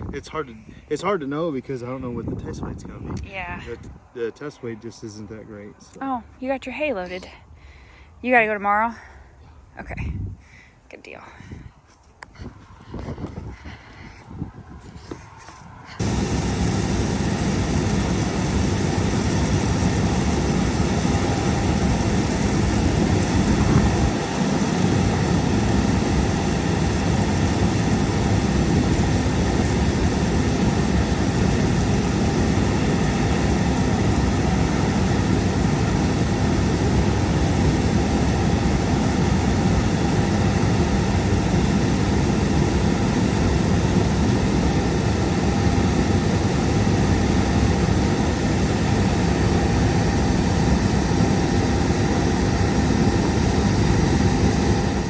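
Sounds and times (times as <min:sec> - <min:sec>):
combine harvester drone: 0:14.7 - 0:55.0.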